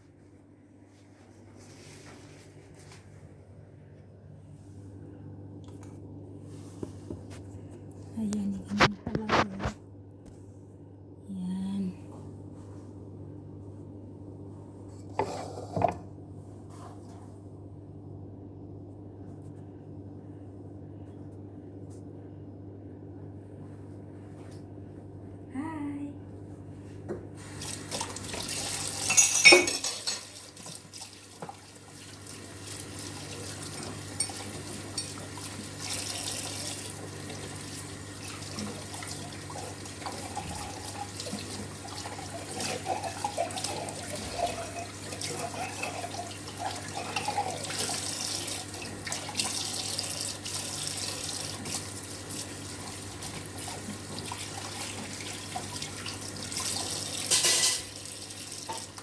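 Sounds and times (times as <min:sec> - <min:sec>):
tap water running into sink: 0:27.4 - 0:59.0
dishes clinking: 0:28.9 - 0:30.4, 0:34.2 - 0:35.2, 0:57.3 - 0:58.0.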